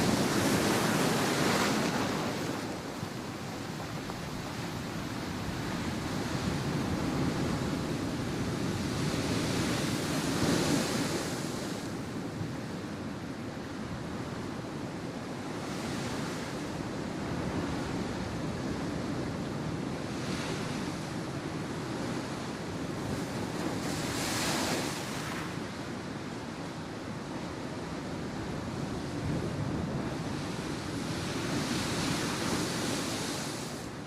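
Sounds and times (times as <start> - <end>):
sea waves washing in: 0.0 - 12.9, 28.6 - 34.0.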